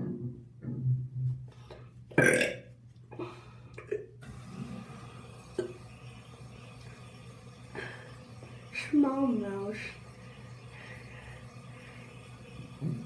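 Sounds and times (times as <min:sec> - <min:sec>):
person burping: 0:02.2 - 0:02.7.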